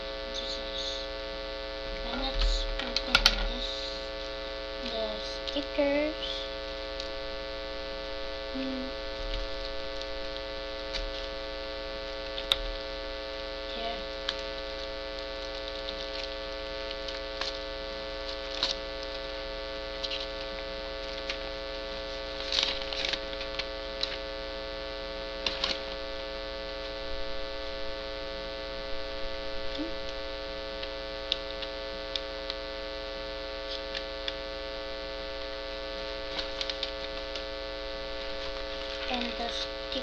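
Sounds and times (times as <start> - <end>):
electrical hum: 0.0 - 40.0
plastic packaging rustling and clicking: 14.2 - 17.6, 18.2 - 19.3, 20.0 - 21.4, 22.2 - 24.2, 25.4 - 26.0, 36.2 - 37.5, 38.2 - 39.4.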